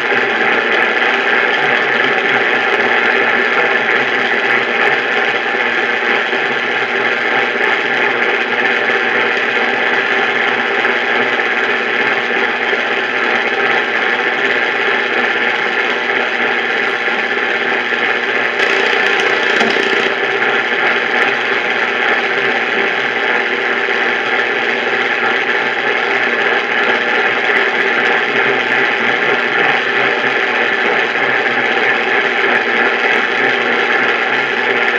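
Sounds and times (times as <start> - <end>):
radio static hiss: 18.6 - 20.2.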